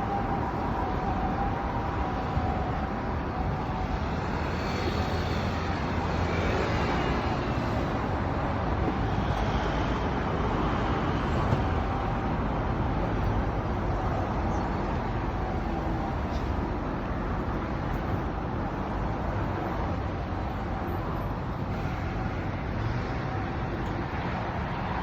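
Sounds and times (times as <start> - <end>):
two-tone ambulance siren: 0.0 - 7.7
road traffic: 0.0 - 25.0.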